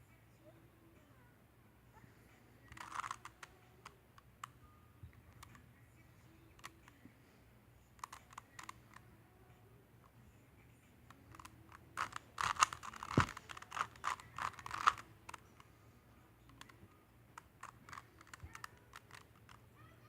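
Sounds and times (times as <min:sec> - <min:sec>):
puzzle cube layers clicking: 0:02.7 - 0:04.6, 0:08.0 - 0:09.0, 0:11.1 - 0:15.7, 0:16.5 - 0:19.6.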